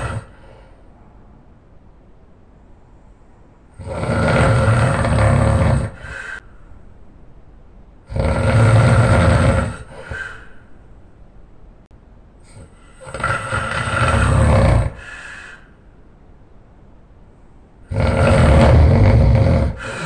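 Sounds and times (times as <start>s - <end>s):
man snoring loudly: 0.0s - 0.4s, 3.8s - 6.2s, 8.1s - 10.2s, 12.5s - 15.2s, 17.9s - 20.0s
soft breath sound: 0.0s - 1.5s, 5.0s - 7.0s, 9.7s - 11.0s, 14.0s - 16.0s.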